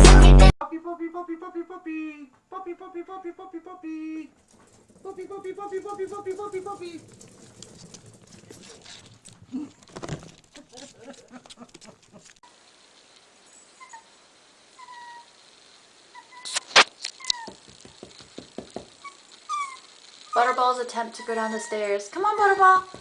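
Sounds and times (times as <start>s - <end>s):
puppy whimpering: 13.8s - 14.1s, 14.8s - 15.3s, 17.2s - 17.5s, 19.0s - 23.0s.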